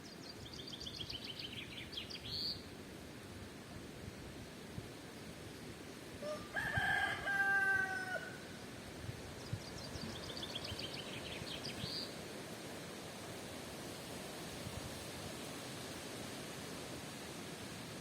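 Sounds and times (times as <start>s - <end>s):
wind hiss: 0.0s - 18.0s
rooster crowing: 6.2s - 8.5s.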